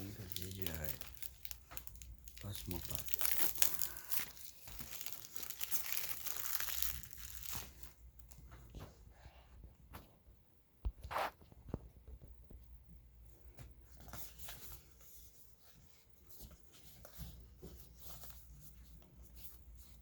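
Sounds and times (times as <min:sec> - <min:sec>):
packaging scraping and rustling: 0:00.0 - 0:08.0.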